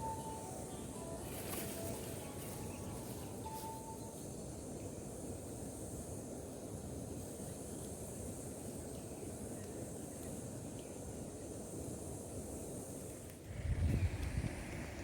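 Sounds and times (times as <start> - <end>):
high-pitched insect drone: 0.0 - 6.0
wind rumble on microphone: 13.4 - 15.0.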